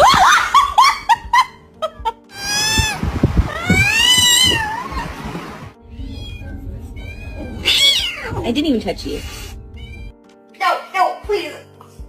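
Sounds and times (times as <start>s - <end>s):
cat meowing and yowling: 2.3s - 10.2s.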